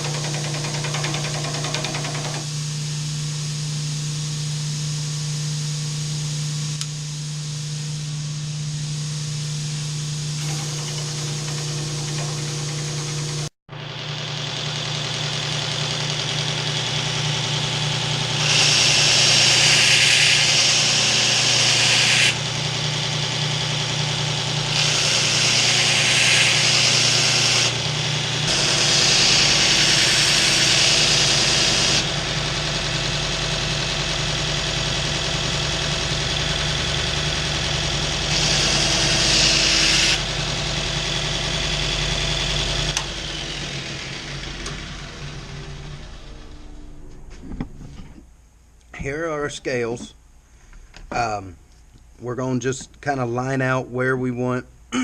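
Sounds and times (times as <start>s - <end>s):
belt grinder motor hum: 0.0s - 2.6s, 10.2s - 47.4s.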